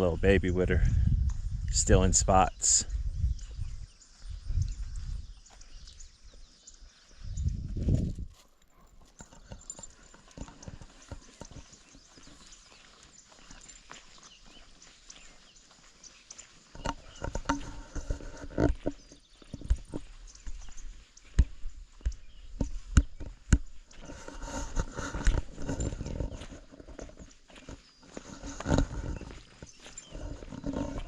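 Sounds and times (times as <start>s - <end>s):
footsteps on a trail: 0.0s - 31.0s
heavy breathing: 24.0s - 26.4s.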